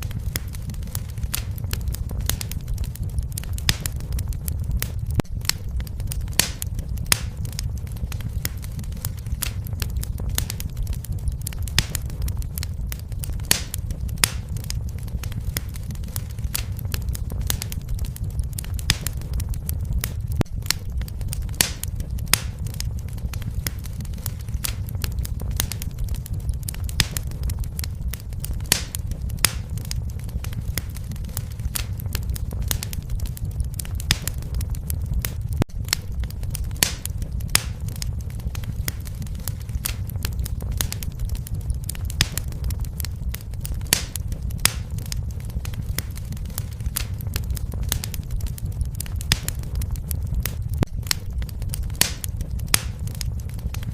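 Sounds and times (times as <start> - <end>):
wood fire crackling: 0.0 - 53.9.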